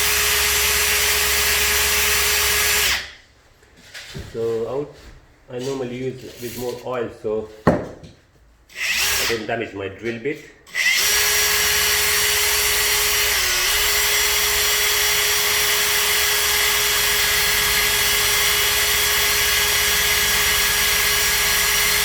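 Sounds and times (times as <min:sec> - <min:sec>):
electric drill boring through metal: 0:00.0 - 0:03.1, 0:08.7 - 0:09.4, 0:10.7 - 0:22.0.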